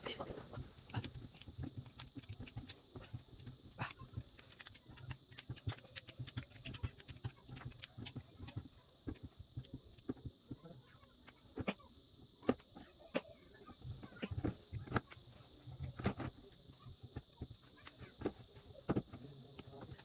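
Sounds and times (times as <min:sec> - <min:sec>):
faint low hum: 0:00.0 - 0:20.0.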